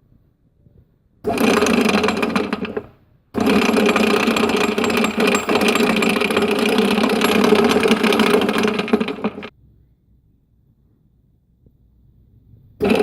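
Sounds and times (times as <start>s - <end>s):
milling machine grinding: 1.3s - 9.5s.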